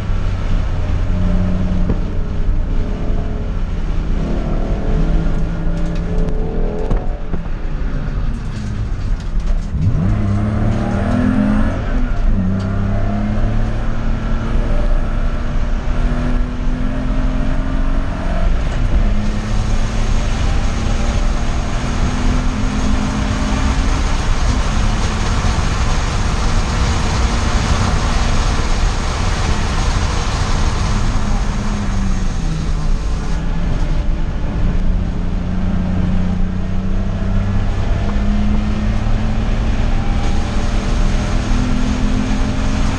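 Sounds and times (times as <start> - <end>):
race car engine running hard: 0.0 - 42.9
wind and road noise: 0.0 - 42.9.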